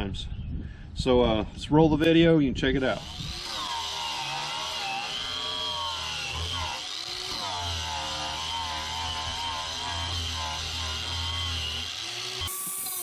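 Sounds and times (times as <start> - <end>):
angle grinder whining: 2.6 - 13.0.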